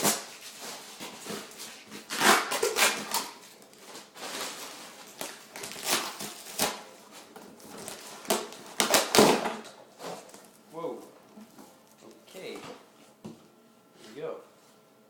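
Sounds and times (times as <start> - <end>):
packaging rustling and tearing: 0.0 - 10.4.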